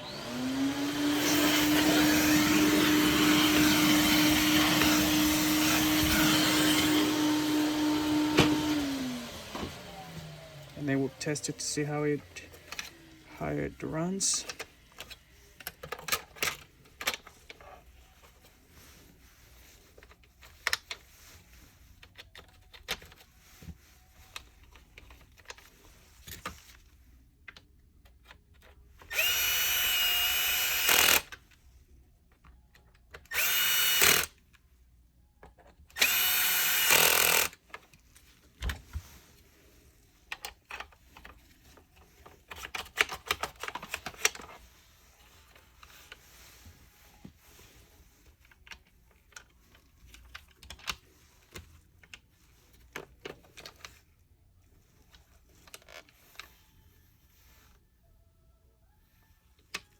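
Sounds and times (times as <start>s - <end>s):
small electric motor whining: 0.0s - 12.1s, 29.1s - 31.2s, 33.3s - 34.3s, 36.0s - 37.6s.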